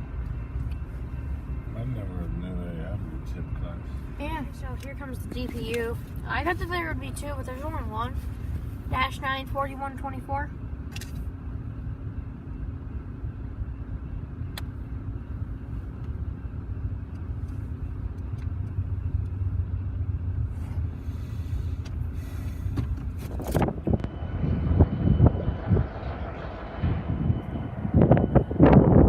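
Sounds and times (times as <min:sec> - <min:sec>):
faint steady hum: 0:00.0 - 0:29.0
low vehicle rumble: 0:00.0 - 0:29.0
loud thumps and buffeting: 0:21.7 - 0:29.0.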